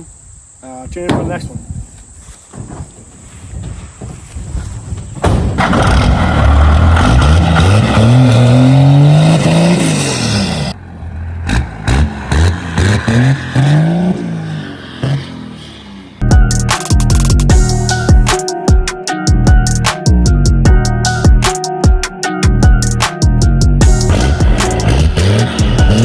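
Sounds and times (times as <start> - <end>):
diesel engine accelerating: 5.6 - 16.4, 23.8 - 26.0.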